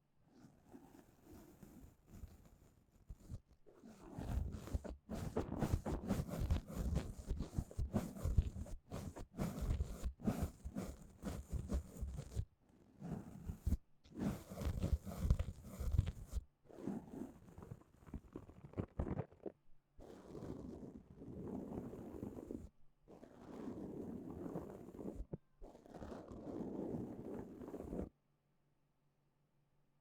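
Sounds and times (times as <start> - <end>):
brush rubbing in ear: 3.9 - 12.4, 13.6 - 16.4.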